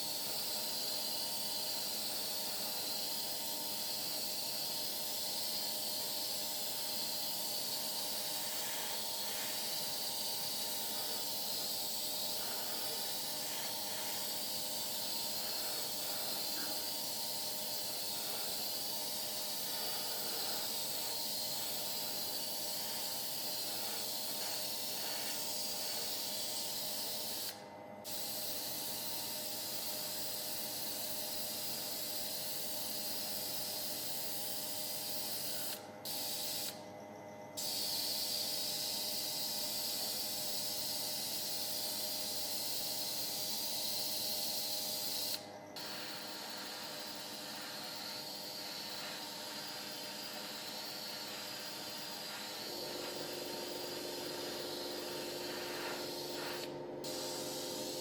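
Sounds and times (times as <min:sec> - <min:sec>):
compressed-air spray hissing: 0:00.0 - 0:36.8, 0:37.6 - 0:58.0
steady hum: 0:06.0 - 0:26.6, 0:45.8 - 0:58.0.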